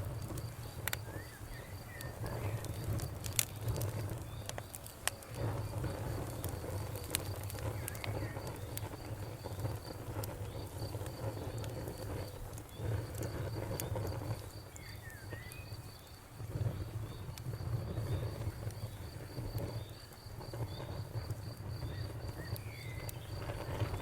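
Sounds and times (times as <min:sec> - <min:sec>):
campfire crackling and popping: 0:00.0 - 0:24.0
cricket chirping: 0:00.0 - 0:24.0.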